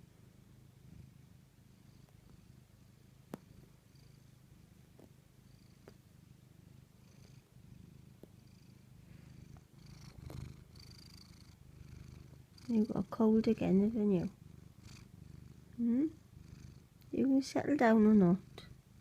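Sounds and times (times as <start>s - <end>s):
cat purring: 0.0s - 19.0s.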